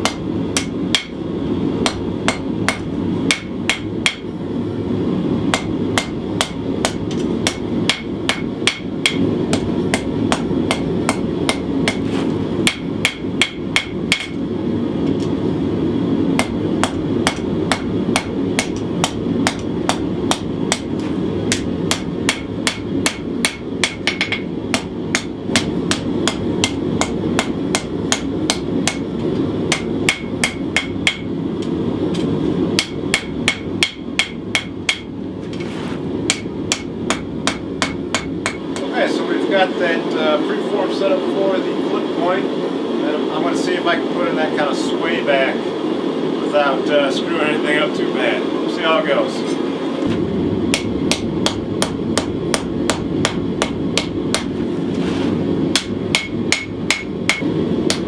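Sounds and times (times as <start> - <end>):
hammer ringing on anvil: 55.8 - 58.0.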